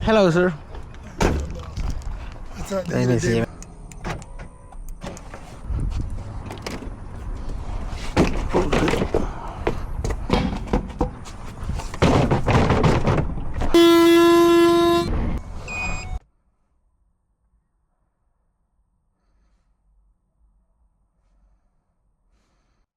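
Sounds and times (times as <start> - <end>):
rustling and knocking: 8.0 - 13.7
car horn: 13.7 - 16.0.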